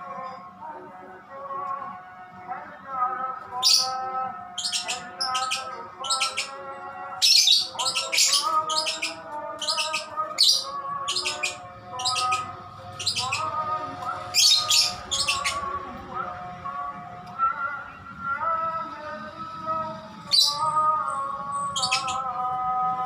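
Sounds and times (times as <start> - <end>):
background music: 0.0 - 23.0
lovebird chirping: 4.6 - 6.6, 7.2 - 13.6, 14.3 - 15.6, 21.6 - 22.3.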